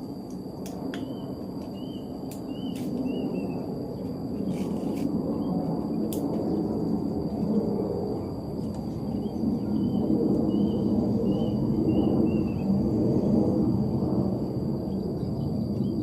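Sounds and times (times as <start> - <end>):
faint high insect whine: 0.0 - 16.0.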